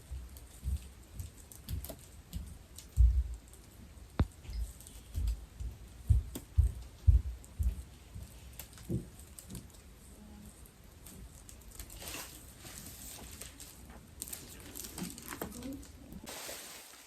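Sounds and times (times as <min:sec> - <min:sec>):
rustle: 0:11.5 - 0:17.0.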